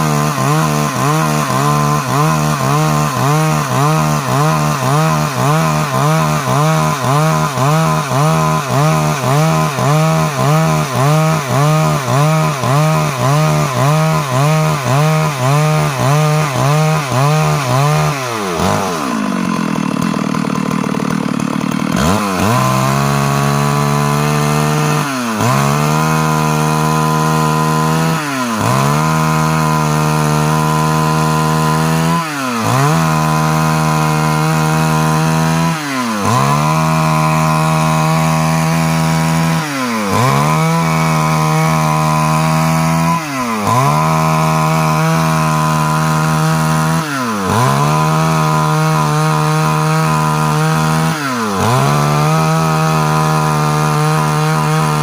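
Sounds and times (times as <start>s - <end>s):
chainsaw cutting wood: 0.0s - 55.0s.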